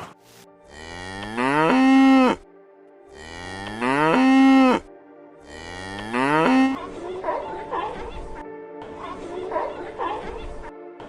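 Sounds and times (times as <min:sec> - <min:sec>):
cow mooing: 0:00.7 - 0:02.4, 0:03.1 - 0:06.8.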